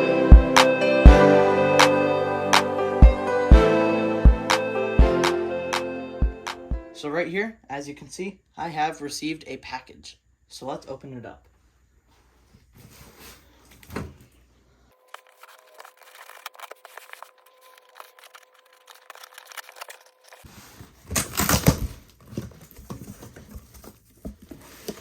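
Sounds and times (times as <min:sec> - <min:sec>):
cardboard package tearing: 0:15.2 - 0:24.1.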